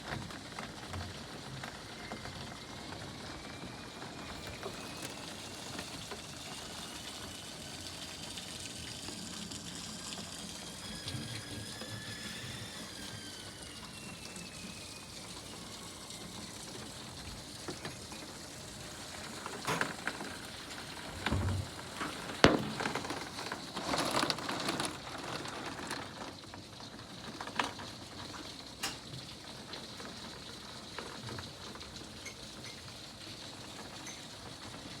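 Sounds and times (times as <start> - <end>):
rain pattering on roofs: 0.0 - 35.0
faint whining tone: 9.0 - 22.1.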